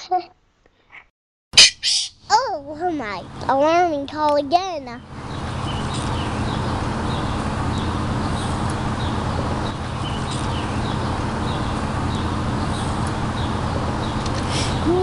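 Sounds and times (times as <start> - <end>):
high bird chirps: 1.6 - 2.3, 5.2 - 14.9
outdoor background rush: 2.1 - 15.0.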